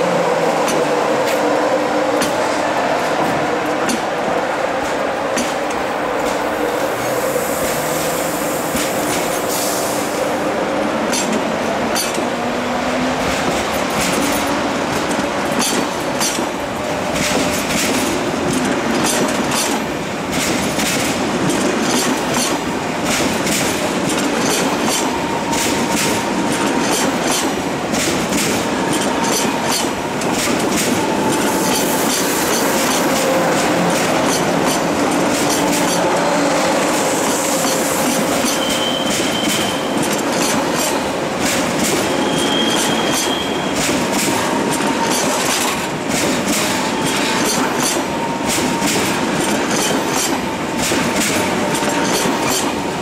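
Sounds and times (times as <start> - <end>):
train rumbling on rails: 0.0 - 53.0
wheels clicking over rail joints: 13.1 - 52.9.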